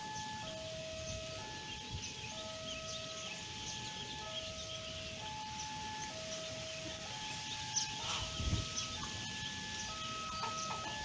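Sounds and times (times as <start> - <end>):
level crossing two-tone alarm: 0.0 - 11.0.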